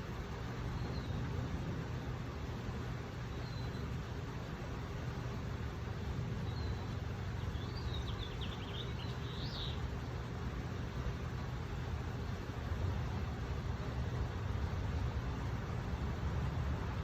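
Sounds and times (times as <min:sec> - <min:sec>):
low outdoor rumble: 0:00.0 - 0:17.0
faint high bird chirps: 0:03.3 - 0:04.0, 0:06.4 - 0:09.9
bird trill: 0:07.5 - 0:09.8.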